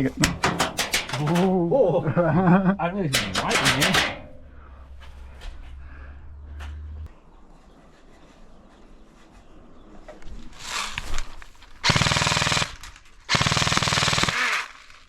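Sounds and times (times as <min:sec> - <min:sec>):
airsoft gun full-auto bursts: 0:11.8 - 0:15.0.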